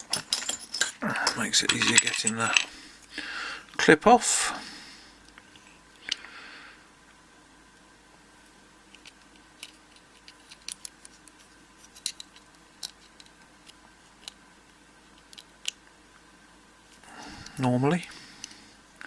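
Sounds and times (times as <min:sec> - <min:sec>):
metal tools clicking on padlock: 0:00.0 - 0:02.7.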